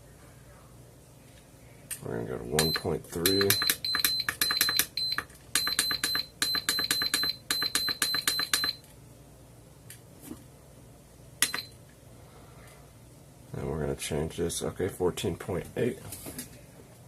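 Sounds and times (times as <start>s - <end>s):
charger beeping: 2.6s - 8.8s.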